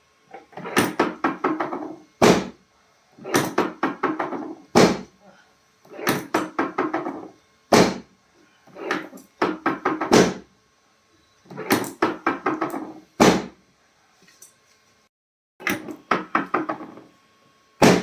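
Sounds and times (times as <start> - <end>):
sharp thuds on treatment table: 2.2 - 2.6, 4.8 - 5.1, 7.7 - 8.1, 9.4 - 10.4, 13.2 - 13.6.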